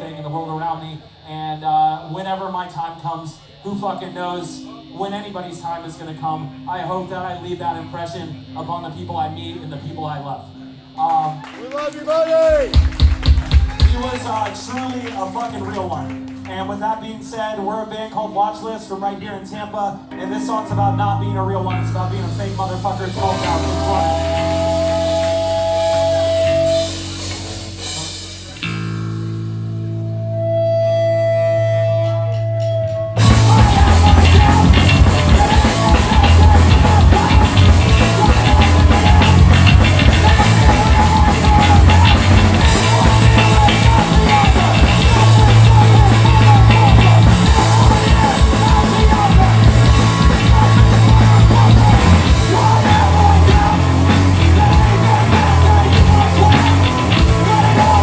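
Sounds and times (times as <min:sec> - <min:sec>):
distorted guitar and bass chords: 0:00.0 - 0:11.2, 0:20.0 - 0:58.0
fast loud punk drums: 0:12.4 - 0:14.8, 0:22.1 - 0:28.9, 0:33.2 - 0:58.0
high feedback tone: 0:20.0 - 0:28.6, 0:29.8 - 0:58.0.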